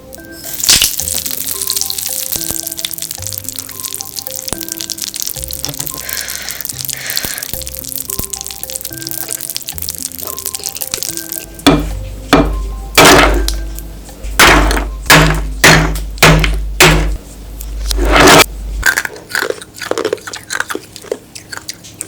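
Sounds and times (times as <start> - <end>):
heavy drum hits: 11.6 - 13.5, 14.4 - 17.2.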